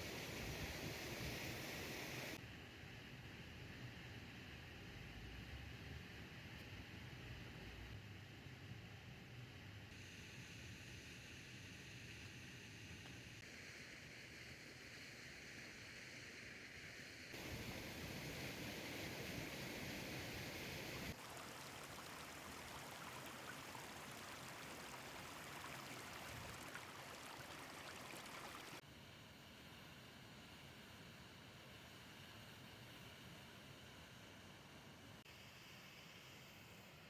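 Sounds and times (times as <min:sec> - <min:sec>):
stream rushing: 0:17.4 - 0:28.8.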